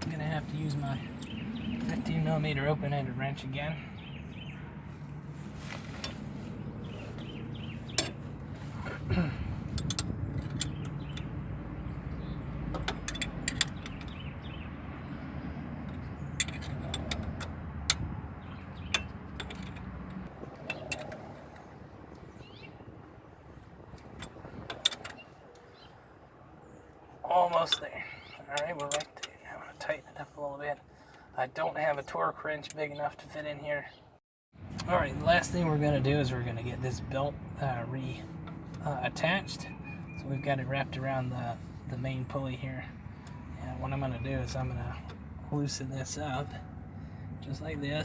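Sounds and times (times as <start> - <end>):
wrench clinking on metal: 7.9 - 8.3, 9.7 - 11.3, 12.7 - 14.2, 15.8 - 18.1, 18.9 - 21.2.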